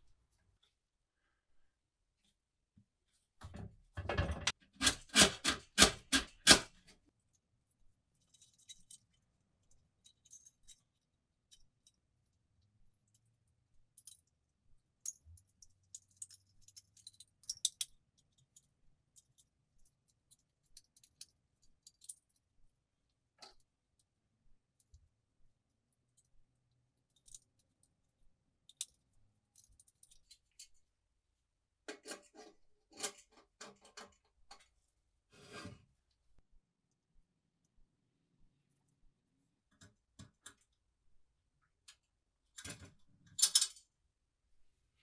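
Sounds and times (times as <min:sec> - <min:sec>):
small metal parts clinking: 0:08.2 - 0:12.0, 0:15.0 - 0:22.4, 0:27.1 - 0:27.7, 0:28.7 - 0:30.7.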